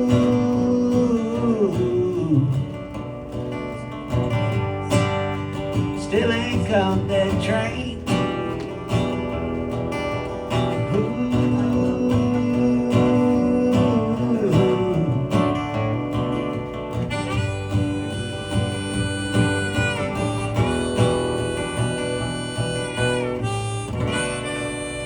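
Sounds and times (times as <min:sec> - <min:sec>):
acoustic guitar strumming: 0:00.0 - 0:25.0
country band playing: 0:00.0 - 0:25.0
harmonica: 0:16.2 - 0:25.0.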